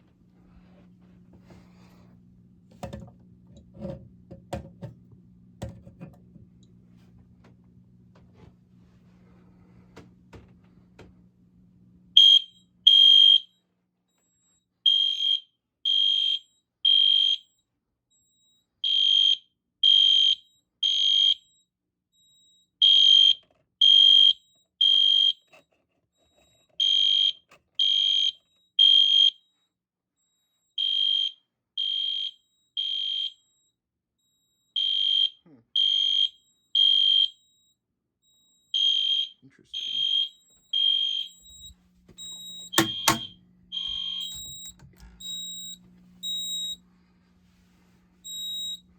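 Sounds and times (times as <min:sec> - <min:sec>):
fire alarm horn beeping: 0:12.2 - 0:13.6, 0:14.9 - 0:17.5, 0:18.8 - 0:21.6, 0:22.8 - 0:25.6, 0:26.4 - 0:29.5, 0:30.8 - 0:46.8, 0:48.2 - 0:48.9.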